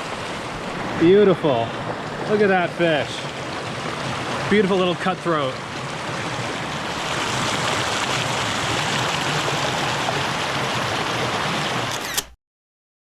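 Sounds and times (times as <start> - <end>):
creek rushing over rocks: 0.0 - 11.9
brief click: 11.9 - 12.4.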